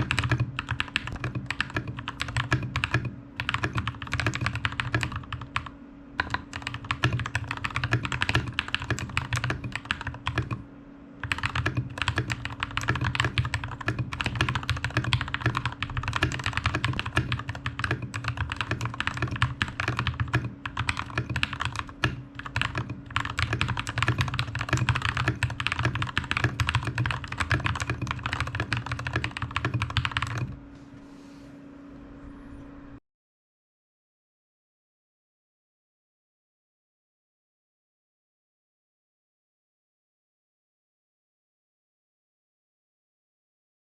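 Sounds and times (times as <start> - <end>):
fast typing on mechanical keyboard: 0.0 - 10.6, 11.2 - 30.6
steady low hum: 0.0 - 33.0.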